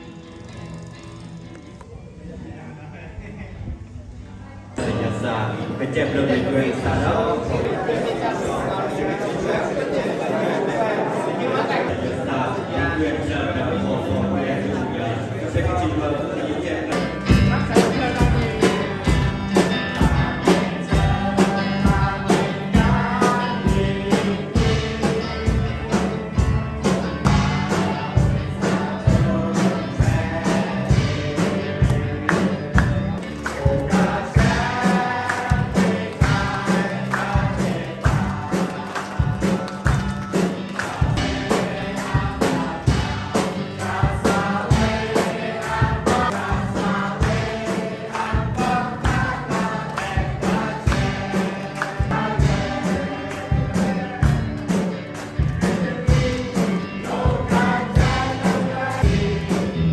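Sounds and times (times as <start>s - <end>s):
group singing a hymn: 4.8s - 59.9s
steady percussion beat: 17.0s - 59.9s.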